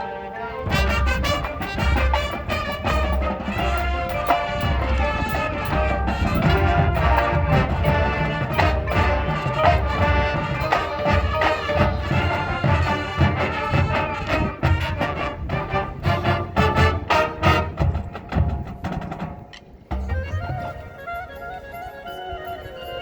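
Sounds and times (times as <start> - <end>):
marching band horns: 0.0 - 19.1
marching drum hits: 0.7 - 19.5.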